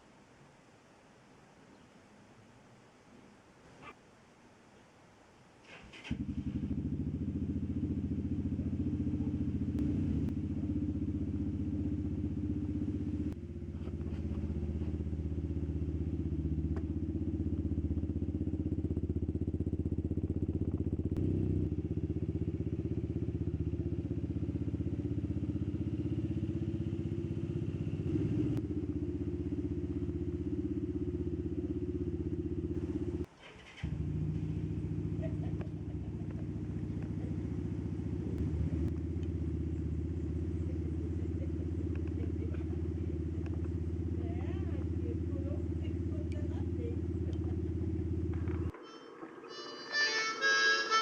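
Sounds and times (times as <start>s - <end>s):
motorcycle engine running: 5.9s - 48.8s.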